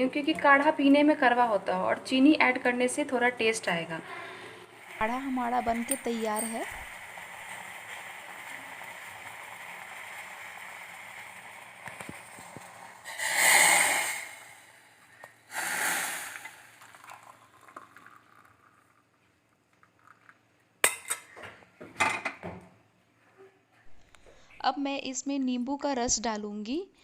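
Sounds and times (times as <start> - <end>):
liquid pouring from saucepan: 4.7 - 20.4.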